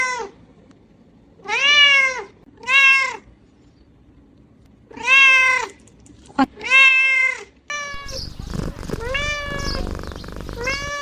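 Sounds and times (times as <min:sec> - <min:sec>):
cat meowing: 0:04.9 - 0:05.8, 0:06.6 - 0:11.0.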